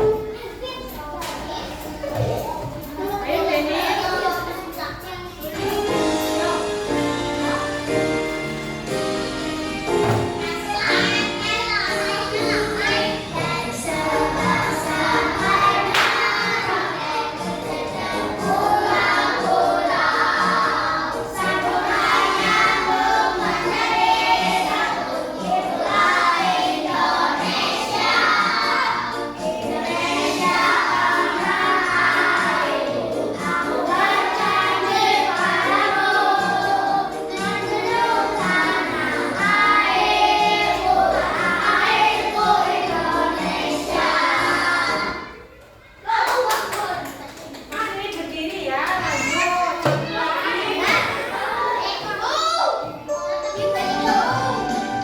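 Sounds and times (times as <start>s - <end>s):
children singing together: 1.7s - 45.8s, 49.1s - 55.0s
music with steady beat: 53.3s - 55.0s.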